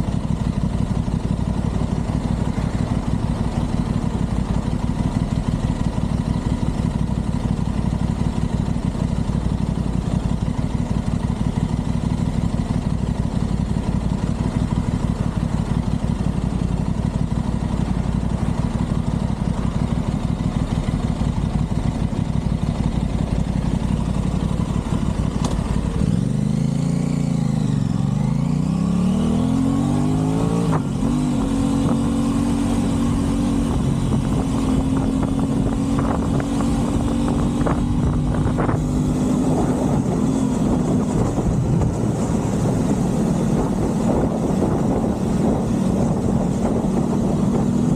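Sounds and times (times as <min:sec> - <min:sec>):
motorcycle engine running and revving: 0:00.0 - 0:47.9.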